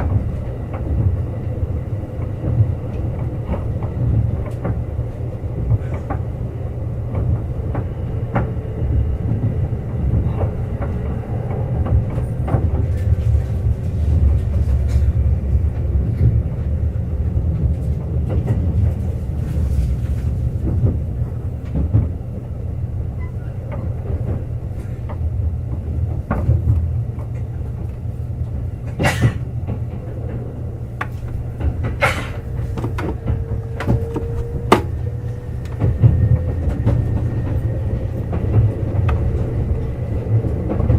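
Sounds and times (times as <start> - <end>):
train wheels rumbling on rail: 0.0 - 40.9
sharp knocks and creaks: 28.9 - 37.6.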